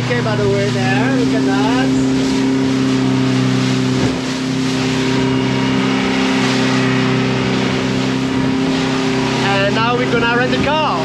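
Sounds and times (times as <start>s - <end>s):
motorboat engine drone: 0.0s - 11.0s
rushing water and wind: 0.0s - 11.0s.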